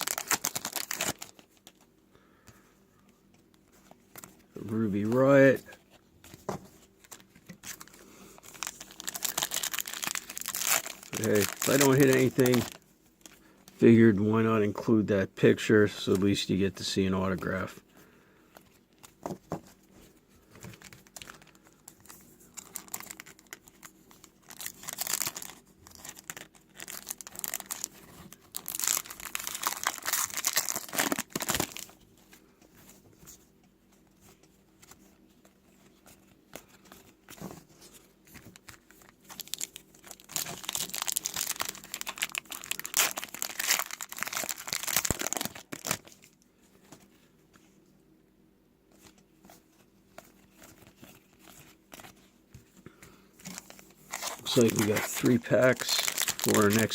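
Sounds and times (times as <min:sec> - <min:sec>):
wrappers tearing and crinkling: 0:00.0 - 0:01.8, 0:07.0 - 0:13.4, 0:20.7 - 0:32.0, 0:36.6 - 0:46.4, 0:53.4 - 0:56.9
card handling: 0:03.6 - 0:13.4, 0:49.0 - 0:56.9.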